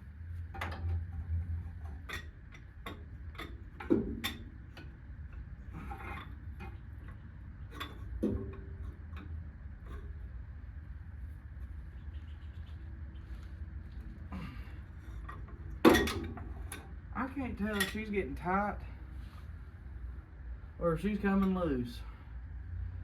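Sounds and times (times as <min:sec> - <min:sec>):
low hum: 0:00.0 - 0:23.0
metal knocks: 0:15.2 - 0:16.9.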